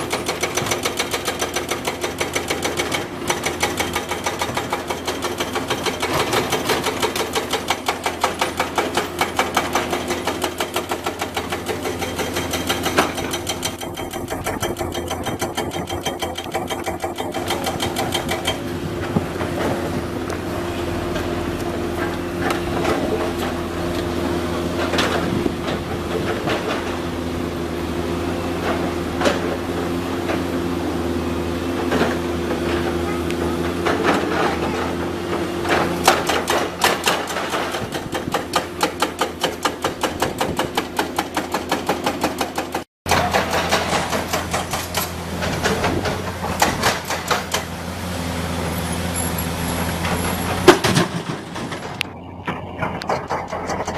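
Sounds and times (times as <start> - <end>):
excavator rhythmic clatter: 0.0 - 27.5, 28.2 - 53.9
engine drone: 10.8 - 38.5, 43.1 - 53.9.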